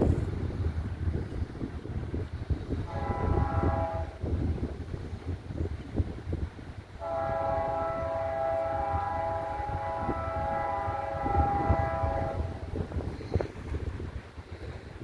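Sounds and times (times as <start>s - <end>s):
wind on microphone: 0.0s - 15.0s
locomotive air horn blast: 2.8s - 4.2s, 7.0s - 12.7s.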